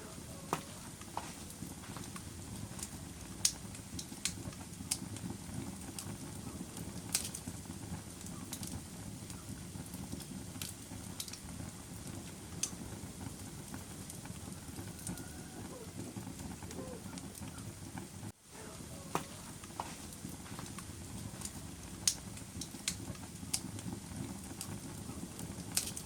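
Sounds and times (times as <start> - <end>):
fire crackling in a fireplace: 0.0 - 26.0.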